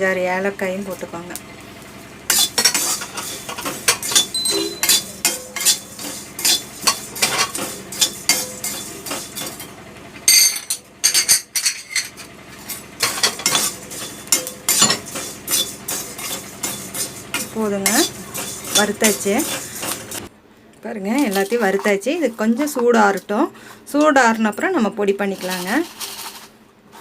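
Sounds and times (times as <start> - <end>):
metal utensil scraping a pan: 2.3 - 9.7, 11.6 - 20.2, 25.2 - 27.0.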